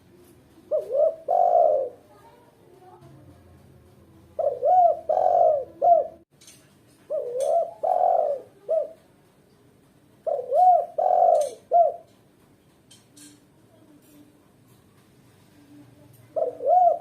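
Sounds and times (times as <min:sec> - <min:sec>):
dove cooing: 0:00.2 - 0:02.1, 0:04.2 - 0:06.2, 0:07.1 - 0:09.1, 0:10.2 - 0:12.2, 0:16.0 - 0:17.0.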